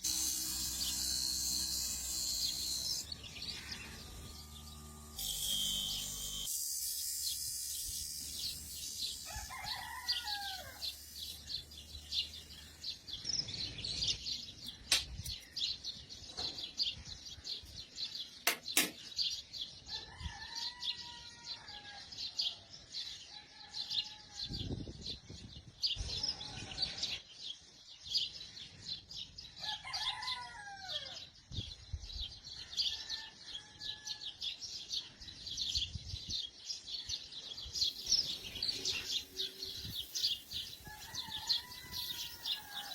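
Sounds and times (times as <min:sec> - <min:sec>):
small birds chirping: 0:00.0 - 0:20.2, 0:34.9 - 0:42.9
rooster crowing: 0:09.2 - 0:11.0, 0:19.9 - 0:22.1, 0:29.6 - 0:31.2, 0:40.7 - 0:42.9.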